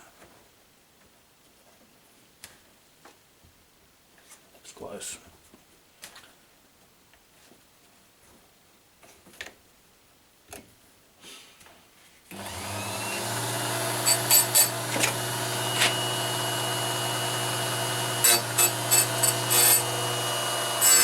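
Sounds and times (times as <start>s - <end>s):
grinder motor humming: 12.3s - 21.0s
grinding wheel on chain: 13.4s - 15.0s, 18.1s - 20.0s.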